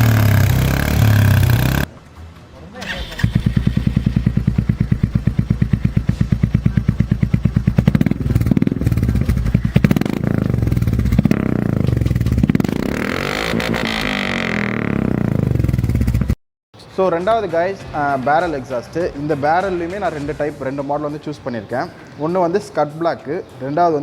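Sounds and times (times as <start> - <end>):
motorcycle engine idling and revving: 0.0 - 2.0, 2.8 - 16.4.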